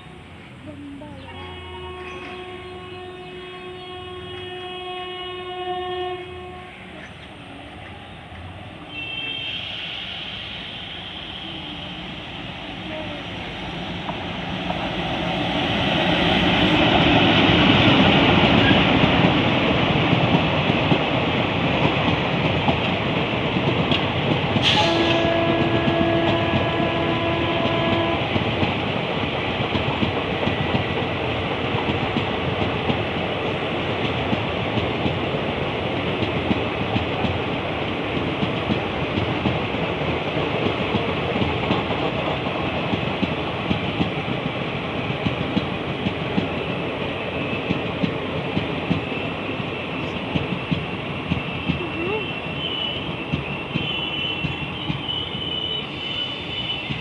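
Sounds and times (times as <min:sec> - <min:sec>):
train rumbling and clattering: 0:00.0 - 0:57.0
locomotive horn blaring: 0:00.8 - 0:07.9, 0:08.9 - 0:09.7, 0:24.6 - 0:28.3.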